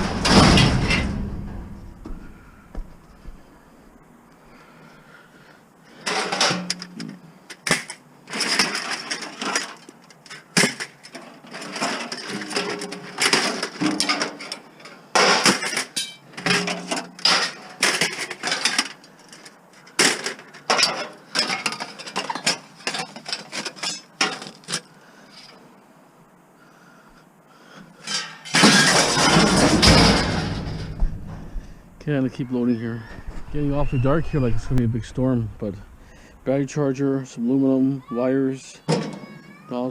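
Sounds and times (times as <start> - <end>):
scrap metal clanking and scraping: 0.0 - 3.2, 5.9 - 25.6, 28.0 - 32.1.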